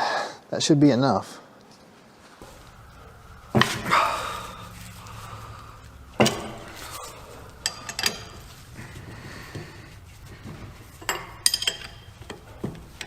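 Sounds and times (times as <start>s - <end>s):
sharp metallic knocks: 2.4s - 8.8s
steel tools clanking together: 2.4s - 13.0s.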